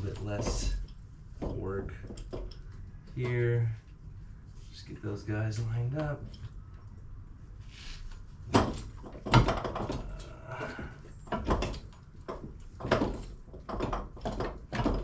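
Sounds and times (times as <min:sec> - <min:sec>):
metal suspension parts clunking: 0:08.4 - 0:15.0.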